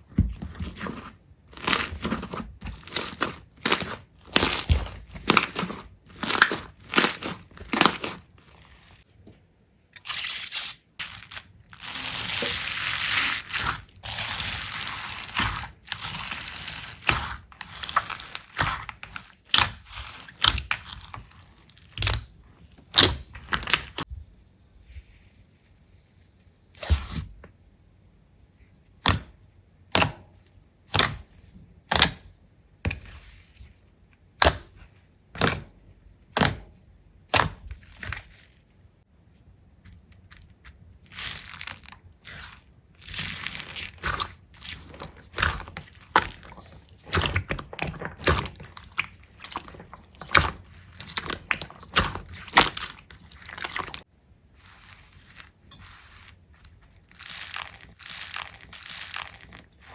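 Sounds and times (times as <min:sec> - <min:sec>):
slime popping and squishing: 0:00.5 - 0:08.9, 0:11.0 - 0:22.3, 0:39.9 - 0:59.9.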